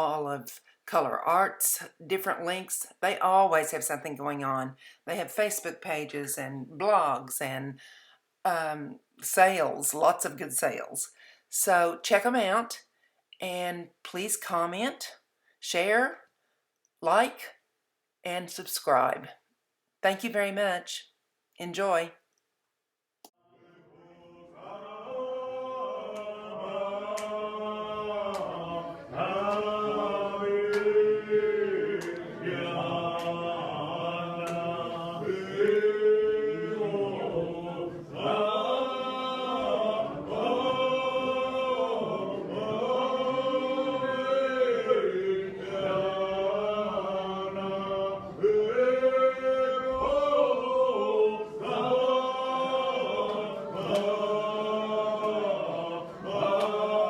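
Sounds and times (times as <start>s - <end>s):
congregation singing a hymn: 23.5s - 57.0s.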